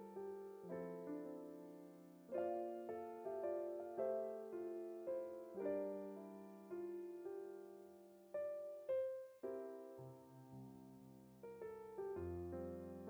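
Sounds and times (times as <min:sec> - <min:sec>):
gentle piano music: 0:00.0 - 0:13.0.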